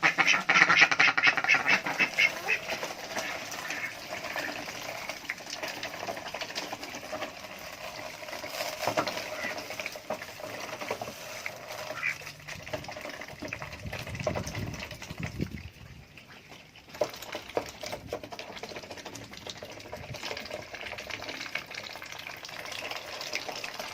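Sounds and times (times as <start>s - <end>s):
duck vocalizations: 0.0s - 4.6s, 11.8s - 12.2s
ducks clicking and bubbling: 0.0s - 23.9s.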